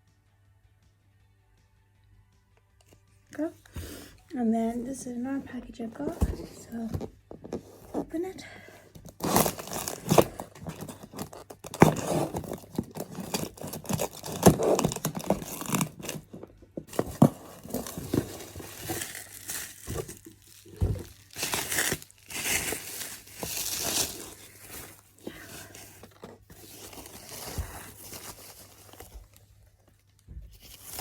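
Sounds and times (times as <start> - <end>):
package being torn open: 9.1 - 25.1.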